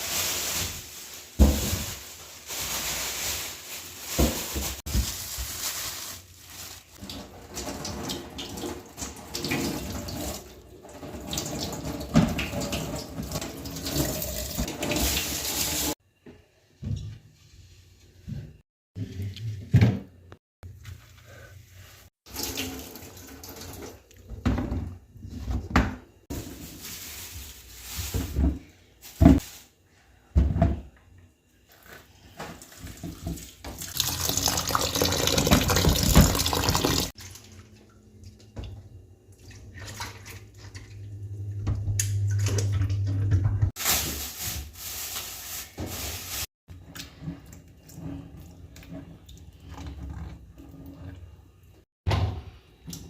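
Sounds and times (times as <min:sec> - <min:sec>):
tap running into a sink: 0:32.4 - 0:37.1.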